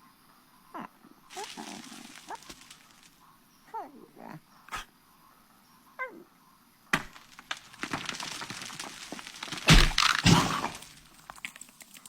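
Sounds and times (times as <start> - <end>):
clatter of cracks and crashing thuds: 7.0 - 12.0.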